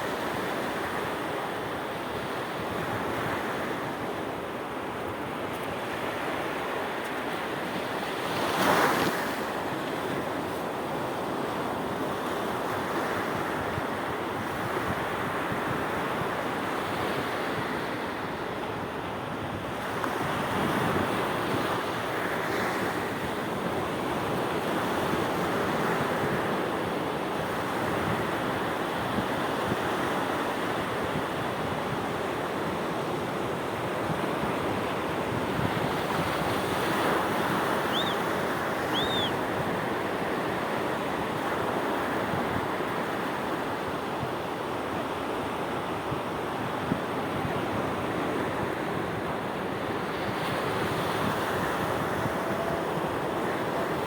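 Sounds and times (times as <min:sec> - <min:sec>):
sea waves breaking on shore: 0:00.0 - 0:54.0
short high chirps: 0:37.9 - 0:38.2, 0:38.9 - 0:39.3.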